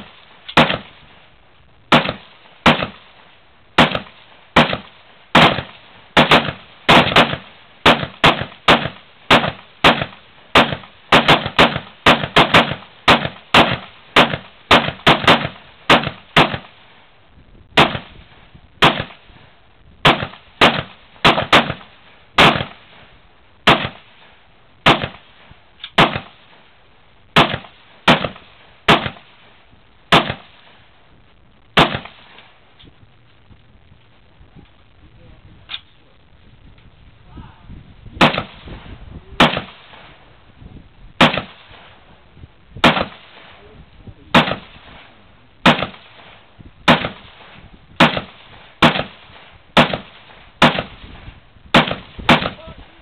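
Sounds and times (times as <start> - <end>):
rapid rifle fire: 0.0 - 0.9, 1.9 - 3.0, 3.8 - 16.8, 17.8 - 18.2, 18.8 - 19.2, 20.0 - 22.8, 23.7 - 24.1, 24.8 - 25.2, 26.0 - 26.4, 27.4 - 29.3, 30.1 - 30.8, 31.8 - 32.3, 38.2 - 38.8, 39.4 - 40.1, 41.2 - 41.8, 42.8 - 43.5, 44.3 - 45.0, 45.6 - 52.8.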